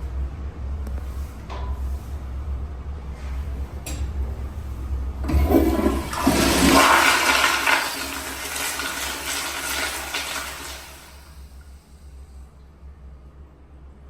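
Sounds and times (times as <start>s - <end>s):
toilet flushing: 5.2s - 11.9s.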